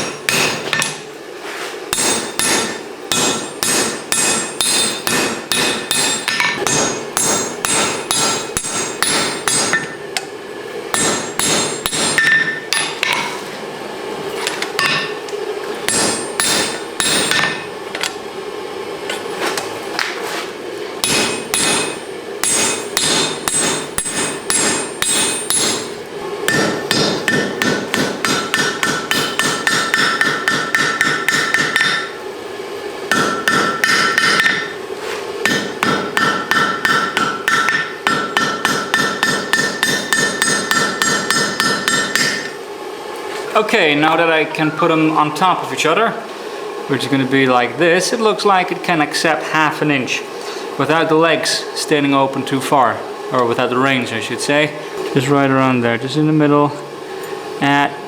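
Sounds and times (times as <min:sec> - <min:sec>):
hammer forging steel on anvil: 0:00.0 - 0:01.1, 0:01.9 - 0:10.3, 0:10.9 - 0:13.3, 0:14.8 - 0:15.3, 0:15.9 - 0:18.2, 0:21.0 - 0:32.2, 0:33.1 - 0:34.8, 0:35.4 - 0:42.6
anvil ringing: 0:01.9 - 0:10.0, 0:15.9 - 0:17.7, 0:21.0 - 0:32.2, 0:33.1 - 0:34.8, 0:35.4 - 0:42.5.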